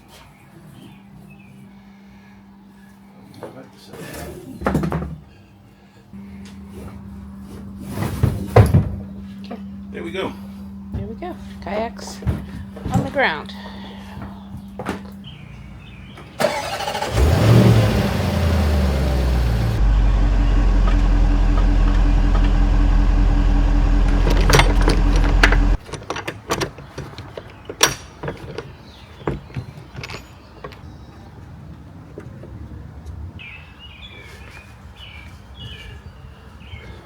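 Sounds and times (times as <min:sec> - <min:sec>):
car engine idling: 0:15.3 - 0:25.8.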